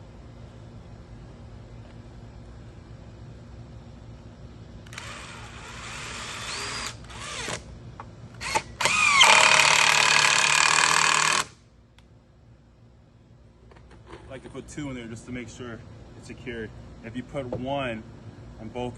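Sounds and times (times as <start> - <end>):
power drill driving screw into wood: 4.9 - 7.7, 8.4 - 11.6.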